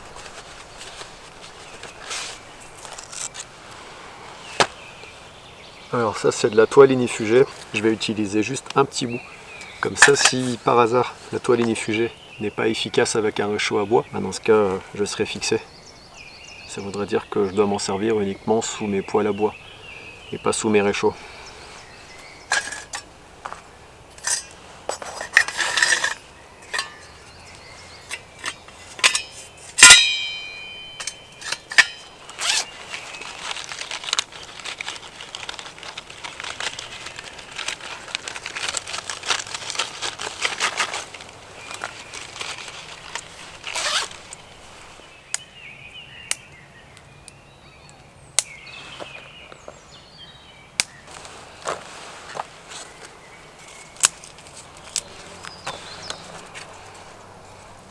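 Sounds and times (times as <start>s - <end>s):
dry twigs snapping: 0.0s - 3.6s, 25.4s - 45.6s, 46.2s - 48.6s, 50.8s - 57.9s
crackling rustle: 0.0s - 57.9s
metal stove clank: 25.3s - 27.3s, 28.1s - 32.0s.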